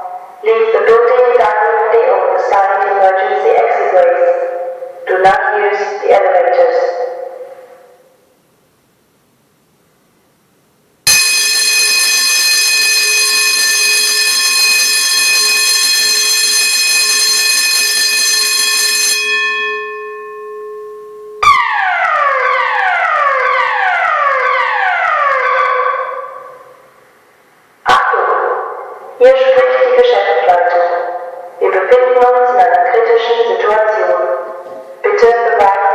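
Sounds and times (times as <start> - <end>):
downward sweeping alarm tone: 11.1 - 26.8
harsh steady alarm tone: 11.1 - 27.1.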